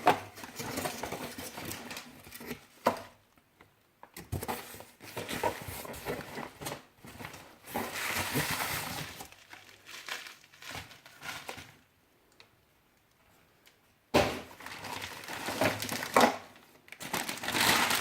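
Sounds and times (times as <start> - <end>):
packaging crinkling and rustling: 0.0 - 3.1, 4.4 - 11.9, 14.5 - 18.0.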